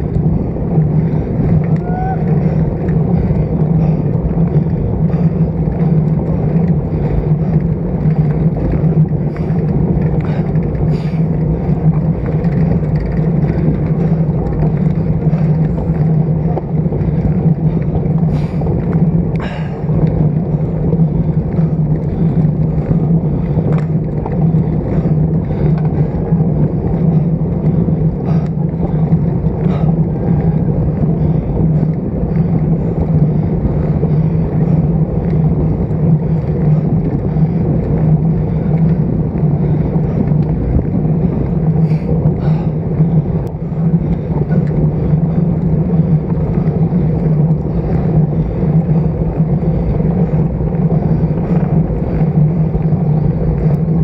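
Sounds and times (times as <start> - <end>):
low hum: 0.0 - 54.0
wind and road noise: 0.0 - 54.0.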